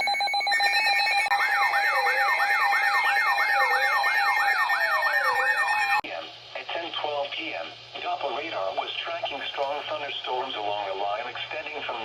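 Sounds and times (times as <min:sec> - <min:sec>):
fast yelp siren: 0:00.0 - 0:06.0
pulsing beeping tone: 0:00.0 - 0:06.0
slow siren wail: 0:00.0 - 0:06.0
steady high tones: 0:00.0 - 0:06.0.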